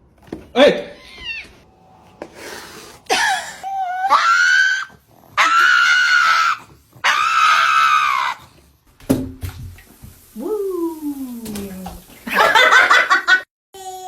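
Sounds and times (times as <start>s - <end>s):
cat yowling: 1.0s - 1.6s, 3.6s - 8.5s.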